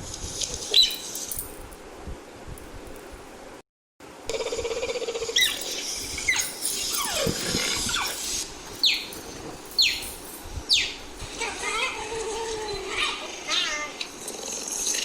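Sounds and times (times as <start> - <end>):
high bird-like chirps: 5.2 - 9.2, 9.8 - 10.1, 10.7 - 11.0.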